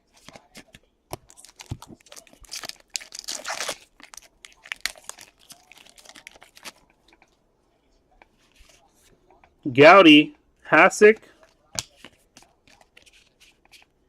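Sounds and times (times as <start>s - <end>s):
card pack wrapper crinkling: 1.2s - 6.9s.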